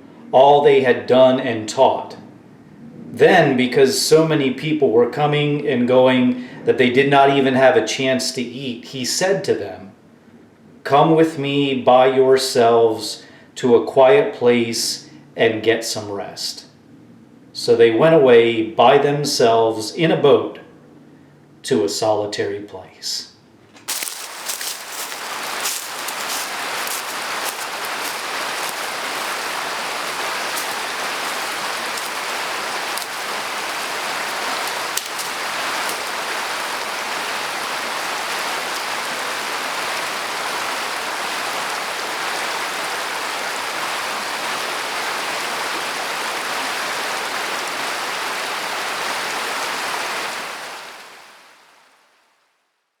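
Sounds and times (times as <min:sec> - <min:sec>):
rushing water: 0:23.9 - 0:52.2.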